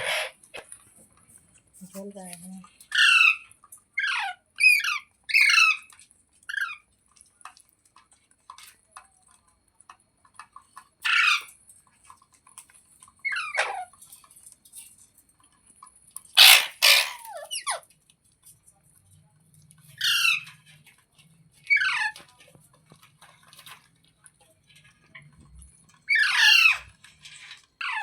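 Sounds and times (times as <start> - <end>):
parakeet harsh squawk: 0.0 - 0.4, 2.9 - 5.9, 11.0 - 11.5, 13.2 - 13.9, 16.4 - 17.8, 20.0 - 20.5, 26.1 - 26.9, 27.8 - 28.0
parakeet screech: 0.0 - 0.4, 16.4 - 17.8, 20.0 - 20.5, 26.1 - 26.9
parakeet chirps: 2.9 - 5.9, 16.4 - 17.8, 20.0 - 20.6, 26.1 - 26.9.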